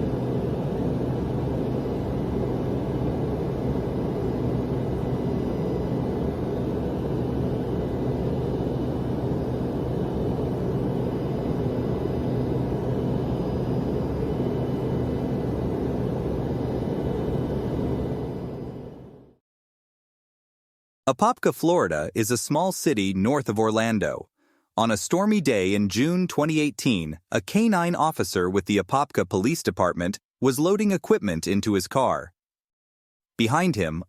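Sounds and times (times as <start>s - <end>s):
airliner cabin drone: 0.0s - 19.4s.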